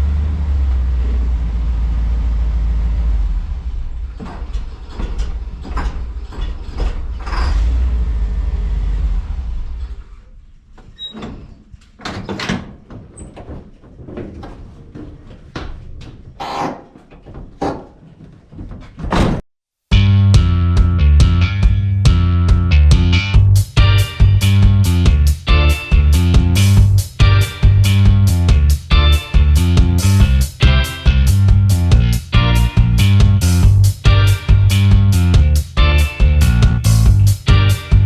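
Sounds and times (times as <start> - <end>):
vehicle engine rumble: 0.0 - 10.6, 20.0 - 38.0
irregular knocks and clunks: 4.0 - 7.8, 10.8 - 19.4.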